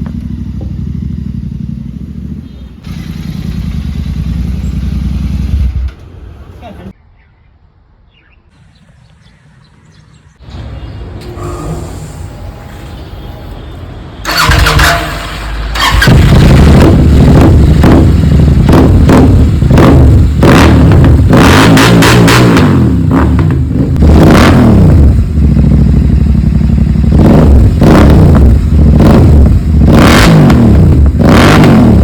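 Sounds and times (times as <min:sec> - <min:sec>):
motorcycle engine revving: 0:00.0 - 0:06.4, 0:14.2 - 0:32.0.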